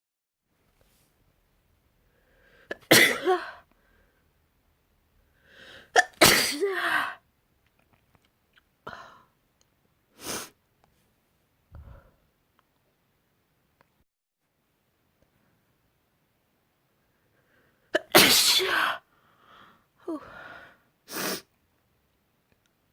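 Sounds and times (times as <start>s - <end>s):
faint breathy sounds: 1.9s - 2.8s, 3.6s - 4.4s, 5.2s - 6.0s, 11.7s - 12.4s, 17.0s - 18.0s, 19.0s - 21.5s
person sneezing: 2.7s - 3.6s, 5.9s - 7.2s, 18.0s - 19.0s.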